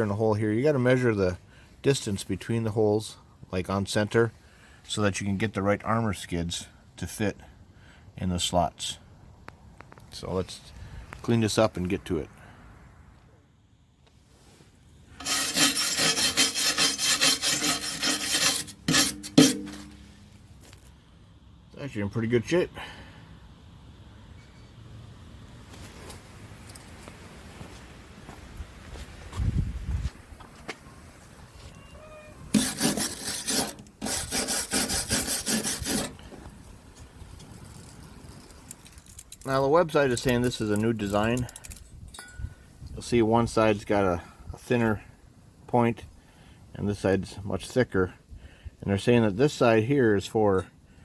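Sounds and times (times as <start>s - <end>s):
scrubbing on metal: 15.2s - 20.1s, 32.5s - 36.3s.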